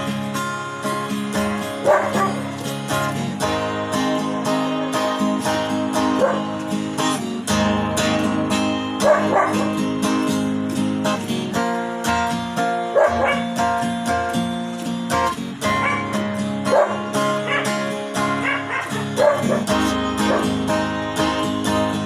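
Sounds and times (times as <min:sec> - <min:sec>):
acoustic guitar music: 0:00.0 - 0:22.0
dog barking: 0:01.8 - 0:02.5, 0:06.1 - 0:06.6, 0:09.0 - 0:09.8, 0:12.9 - 0:13.6, 0:15.7 - 0:20.6.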